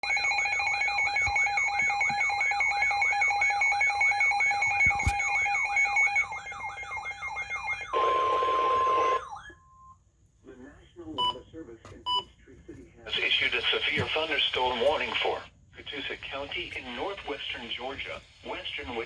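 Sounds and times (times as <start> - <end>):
warbling alarm siren: 0.0 - 9.9
steady alarm tones: 0.0 - 10.0.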